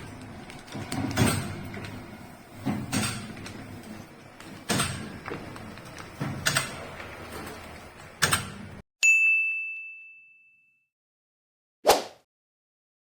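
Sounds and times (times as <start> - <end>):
mechanical clatter: 0.0 - 8.8
bell-like ding: 9.0 - 10.9.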